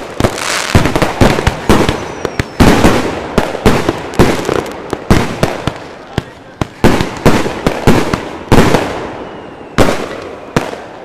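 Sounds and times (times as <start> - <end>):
fireworks bangs: 0.0 - 11.0
fireworks crackling: 0.0 - 11.0
firework whistle: 1.6 - 3.0, 8.6 - 11.0.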